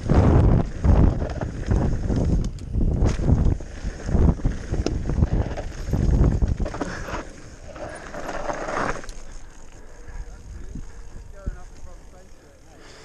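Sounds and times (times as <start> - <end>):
wind buffeting microphone: 0.0 - 7.8, 10.0 - 12.1
mountain bike rumble and rattle: 0.0 - 13.0.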